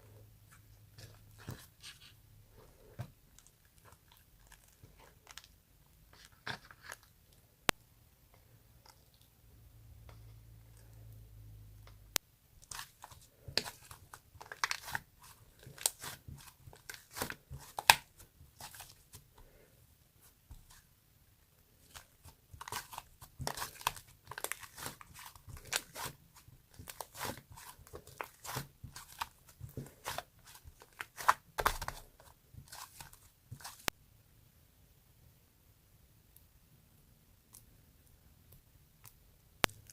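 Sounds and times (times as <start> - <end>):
sticky dough crackling in hands: 12.5 - 34.0, 39.0 - 39.9.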